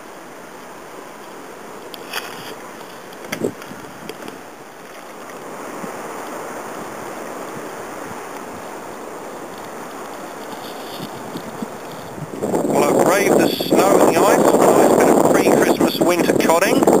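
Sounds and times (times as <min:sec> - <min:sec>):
sea water rushing: 0:00.0 - 0:17.0
wind: 0:00.0 - 0:17.0.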